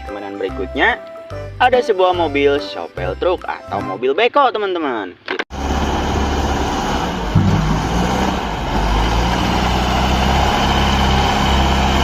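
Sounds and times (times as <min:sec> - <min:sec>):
truck engine idling: 0:05.6 - 0:12.0.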